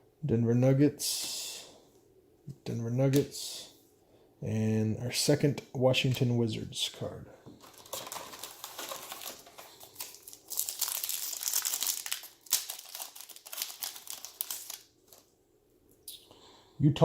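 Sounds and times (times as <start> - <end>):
trading cards rustling: 7.6 - 15.3.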